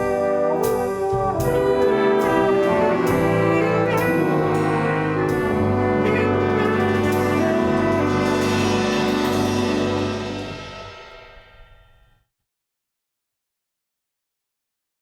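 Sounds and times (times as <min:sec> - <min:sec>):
brass ensemble chords: 0:00.0 - 0:11.8.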